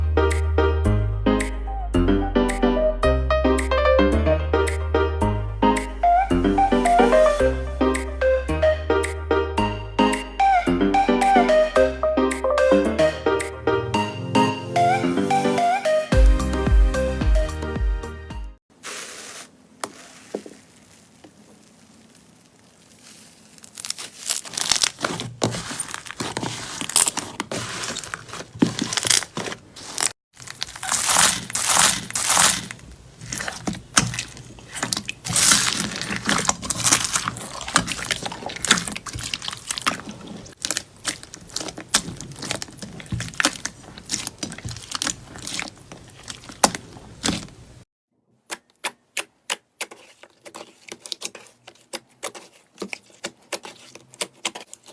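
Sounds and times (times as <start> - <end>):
slime crackling and popping: 18.9 - 47.6.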